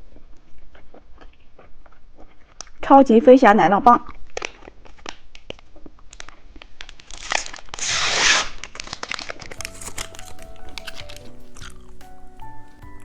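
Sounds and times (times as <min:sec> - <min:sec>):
plastic wrapper crinkling and tearing: 0:04.2 - 0:13.0
plinking background music: 0:09.6 - 0:13.0.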